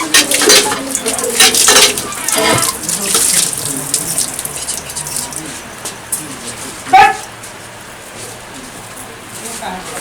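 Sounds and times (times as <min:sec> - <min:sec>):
water pouring and splashing: 0:00.0 - 0:05.5.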